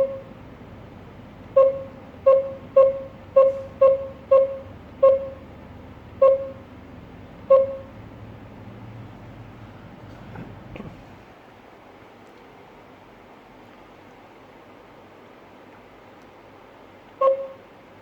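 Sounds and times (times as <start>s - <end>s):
keypad beeps: 1.6s - 5.4s, 6.2s - 6.6s, 7.5s - 7.9s, 17.2s - 17.6s.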